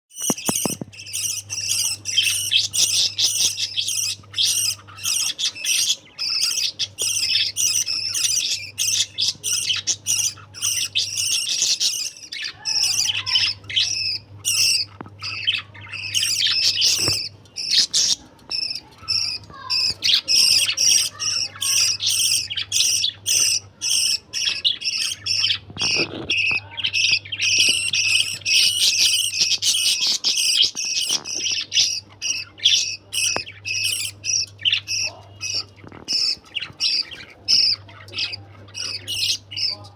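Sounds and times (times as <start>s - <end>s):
budgerigars chattering and chirping: 0.1s - 39.9s.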